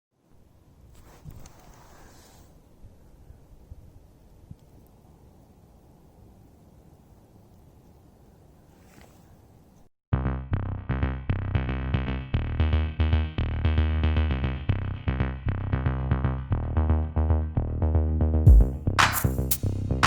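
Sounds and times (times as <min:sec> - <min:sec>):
electronic synthesizer music: 0:10.2 - 0:20.0
drum machine beat: 0:18.5 - 0:20.0.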